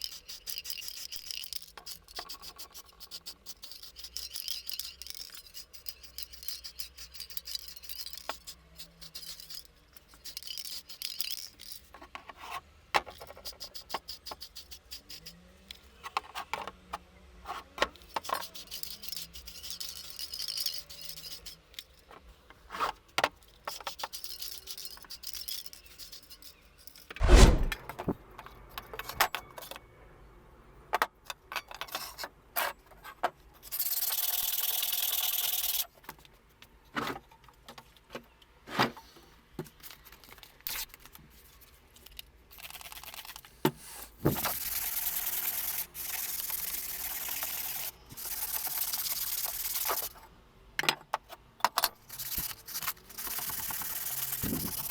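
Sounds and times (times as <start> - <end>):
loud thump: 27.2 - 28.2.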